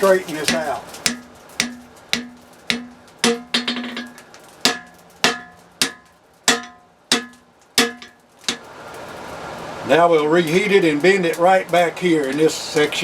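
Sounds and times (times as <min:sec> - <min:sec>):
hammer striking hot steel on anvil: 0:00.4 - 0:08.7.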